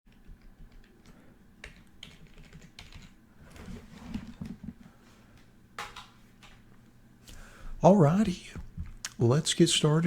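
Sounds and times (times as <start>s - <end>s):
keyboard typing: 0.1s - 3.7s.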